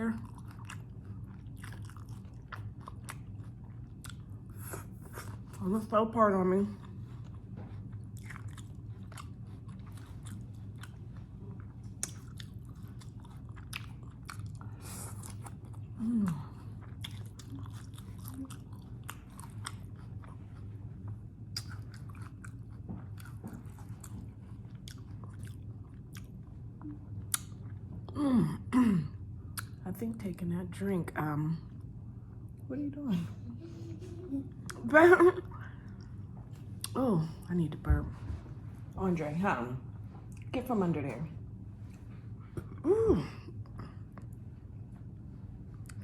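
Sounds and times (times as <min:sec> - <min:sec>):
faint low hum: 0:00.0 - 0:46.0
chewing crunchy taco: 0:00.2 - 0:05.8, 0:06.7 - 0:28.1, 0:43.6 - 0:46.0.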